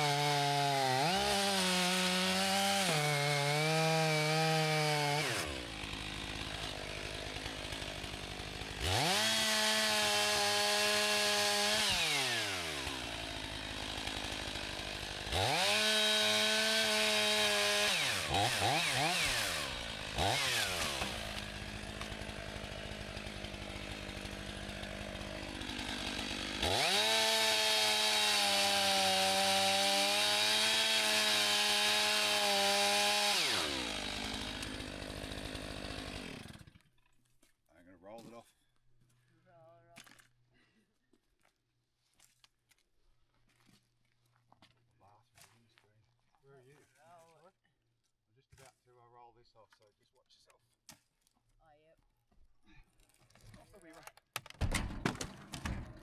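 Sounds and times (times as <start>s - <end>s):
chainsaw cutting and revving: 0.0s - 36.8s, 54.6s - 56.0s.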